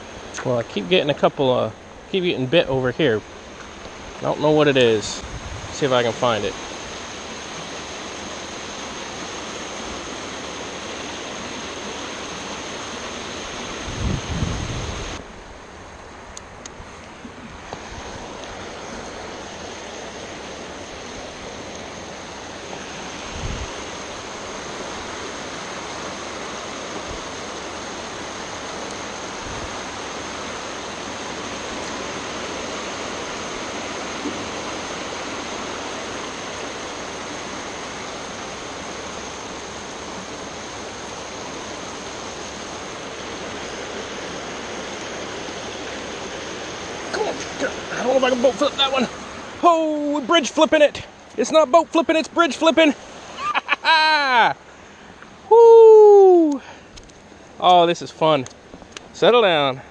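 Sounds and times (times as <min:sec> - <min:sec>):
rushing water: 0:00.0 - 0:59.9.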